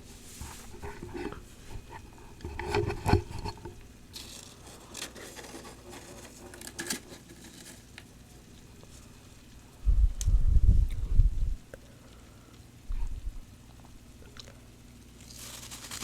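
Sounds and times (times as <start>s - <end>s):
frost being scraped and crunched: 0.2s - 8.0s, 15.2s - 16.0s.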